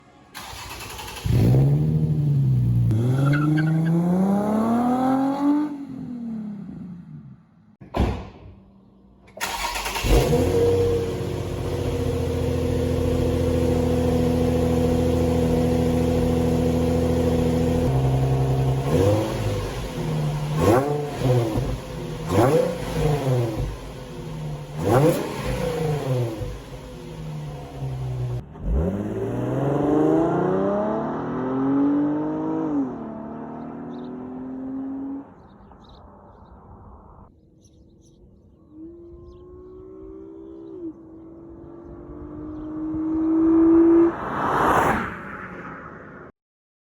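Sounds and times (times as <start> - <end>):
engine revving: 0.4 - 7.3, 9.4 - 35.3
car engine idling: 21.6 - 28.4.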